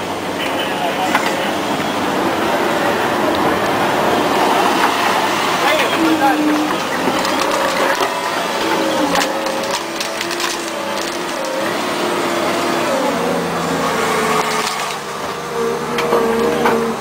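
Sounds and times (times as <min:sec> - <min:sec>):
bulldozer engine running: 0:00.0 - 0:17.0
wood splintering and crushing: 0:06.2 - 0:13.0, 0:14.0 - 0:15.2.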